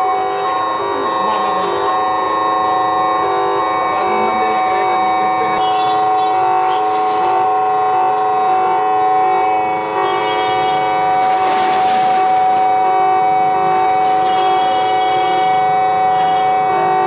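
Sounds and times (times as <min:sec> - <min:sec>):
electronic alarm siren: 0:00.0 - 0:17.0.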